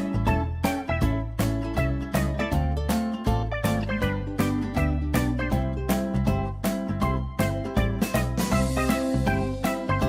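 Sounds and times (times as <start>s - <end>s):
upbeat music with plucked notes: 0.0s - 10.0s.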